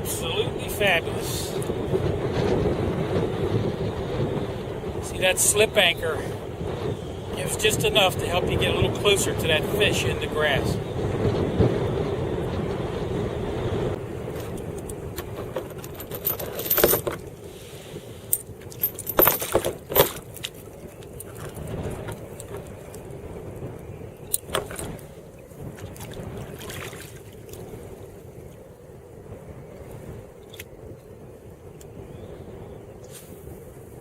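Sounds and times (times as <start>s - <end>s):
wind buffeting microphone: 0.0s - 34.0s
gear clicking and rattling: 14.3s - 17.3s, 18.3s - 22.8s.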